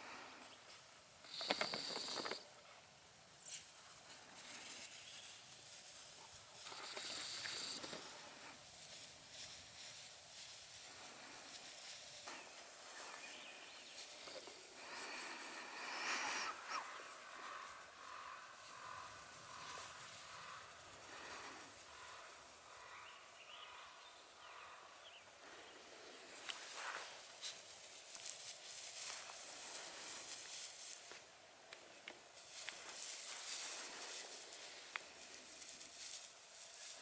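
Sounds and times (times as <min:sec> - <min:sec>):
puppies scuffling on grass: 0:03.3 - 0:15.8, 0:16.6 - 0:22.9, 0:26.2 - 0:37.0.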